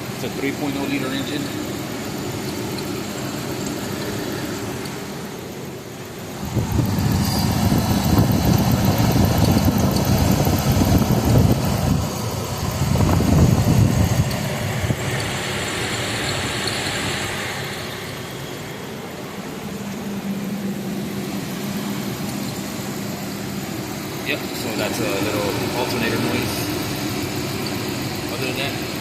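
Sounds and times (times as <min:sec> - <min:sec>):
pickup truck engine running: 0:00.0 - 0:29.0
alternator squeak: 0:06.4 - 0:18.6.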